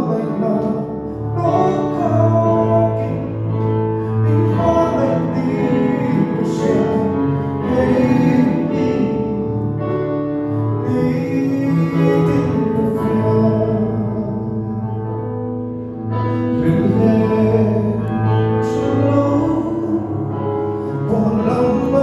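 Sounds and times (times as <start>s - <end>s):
men singing: 0.0s - 9.7s, 10.8s - 14.5s, 16.5s - 20.3s, 21.0s - 22.0s.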